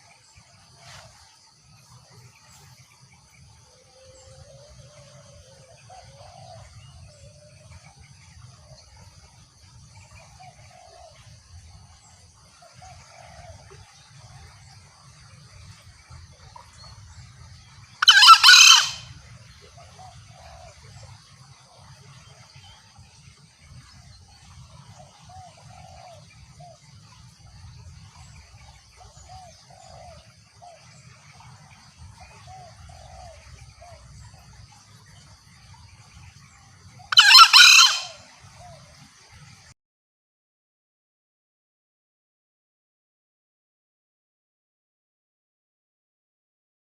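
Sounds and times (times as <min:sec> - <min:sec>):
junglefowl crowing: 0:18.0 - 0:19.2, 0:37.1 - 0:38.3.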